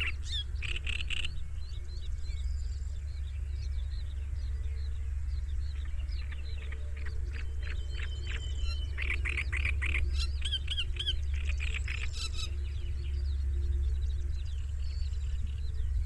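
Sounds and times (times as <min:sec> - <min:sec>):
songbirds chirping: 0:00.0 - 0:16.0
steady low hum: 0:00.0 - 0:16.0.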